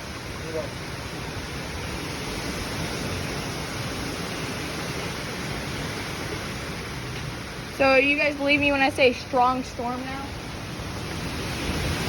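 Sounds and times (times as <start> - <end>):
heavy rain: 0.0 - 12.0
storm wind: 0.0 - 12.0.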